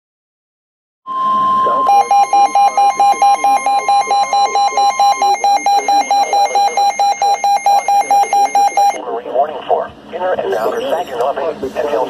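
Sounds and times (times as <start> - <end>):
rapid electronic alarm beeps: 1.1 - 9.0
steady high alarm tone: 1.1 - 9.0.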